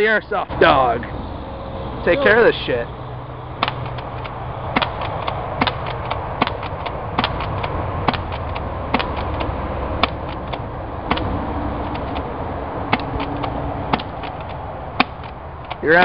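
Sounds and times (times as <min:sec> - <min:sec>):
low rumble: 0:00.3 - 0:15.5
pellets striking plastic disc: 0:03.6 - 0:11.3
airsoft shotgun firing: 0:04.7 - 0:07.4.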